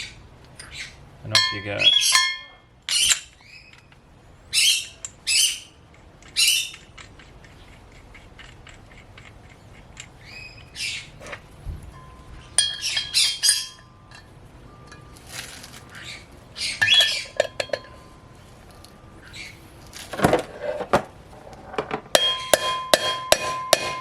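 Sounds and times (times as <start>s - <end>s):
hammer ringing on metal tool: 1.3s - 2.7s, 12.0s - 15.1s, 22.1s - 24.0s
birds squawking: 1.7s - 3.8s, 8.9s - 11.4s, 12.4s - 13.9s, 15.8s - 17.5s.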